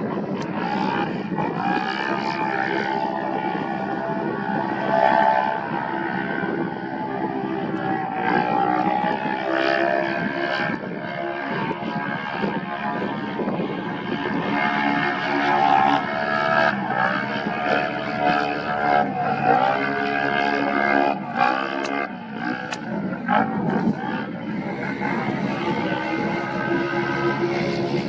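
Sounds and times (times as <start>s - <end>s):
race vehicle engine revving: 0.0s - 28.0s.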